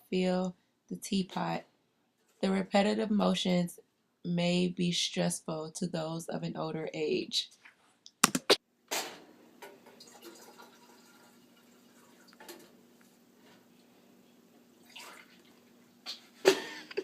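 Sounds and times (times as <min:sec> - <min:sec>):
water pouring into kettle: 0:09.9 - 0:12.5, 0:14.8 - 0:15.9.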